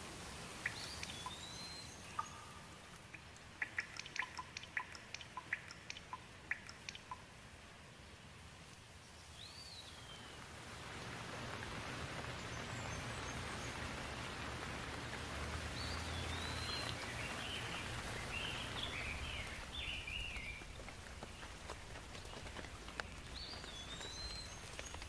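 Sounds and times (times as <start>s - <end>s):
steady rain falling: 0.0s - 25.0s
bird chirping: 0.6s - 7.3s, 9.1s - 10.5s, 15.6s - 25.0s.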